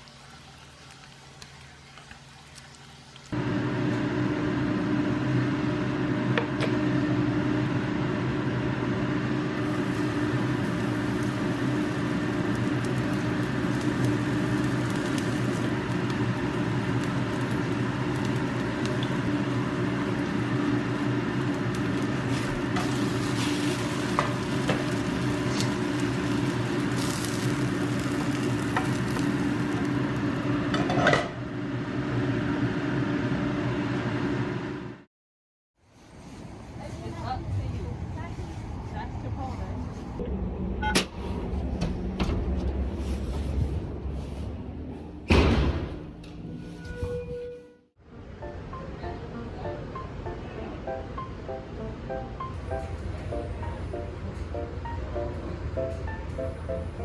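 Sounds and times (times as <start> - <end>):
food sizzling in a frying pan: 9.6 - 30.8.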